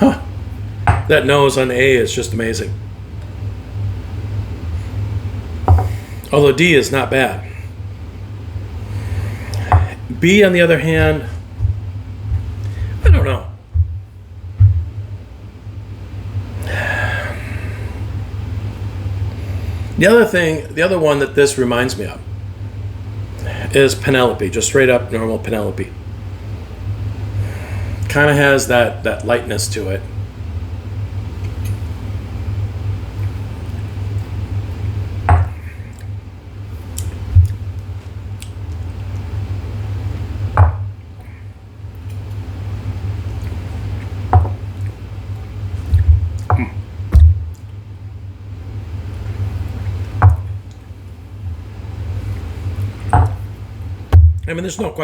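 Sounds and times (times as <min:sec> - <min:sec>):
low room rumble: 0:00.0 - 0:55.0
breathy rush of air: 0:08.8 - 0:10.1, 0:16.6 - 0:18.1.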